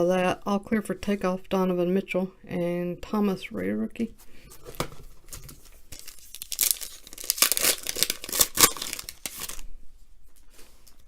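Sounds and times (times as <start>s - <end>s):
card pack wrapper crinkling: 4.6s - 9.7s.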